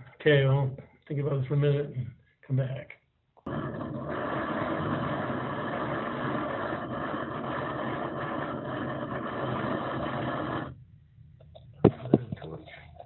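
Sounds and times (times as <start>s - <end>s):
torch flame rushing: 3.5s - 10.8s.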